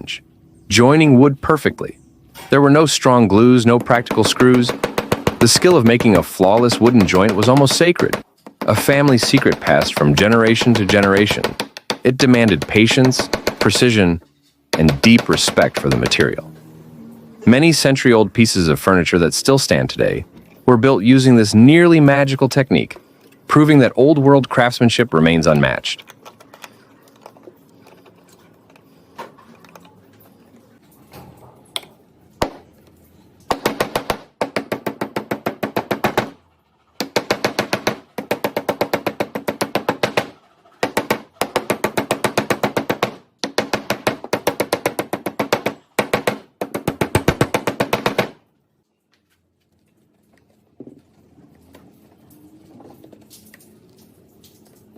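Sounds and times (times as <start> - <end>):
rapid percussive tapping: 3.9 - 13.9.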